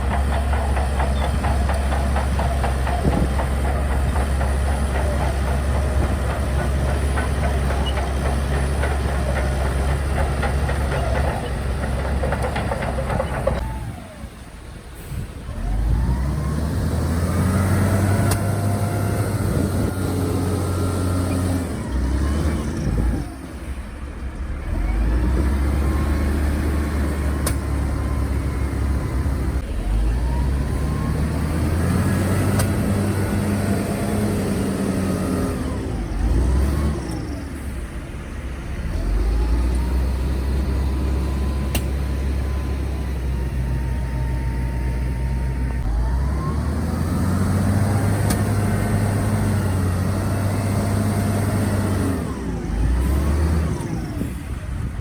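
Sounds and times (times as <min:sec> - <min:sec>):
heavy diesel engine revving: 0:15.0 - 0:23.4, 0:24.6 - 0:55.0.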